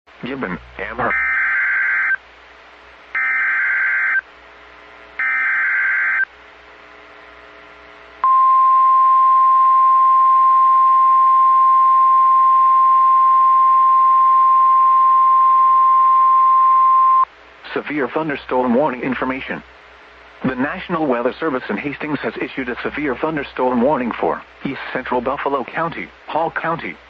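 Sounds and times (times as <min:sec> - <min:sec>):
screeching data bursts: 0:01.0 - 0:02.2, 0:03.2 - 0:04.2
steady alarm tone: 0:01.1 - 0:02.2, 0:03.2 - 0:04.2, 0:05.2 - 0:06.3.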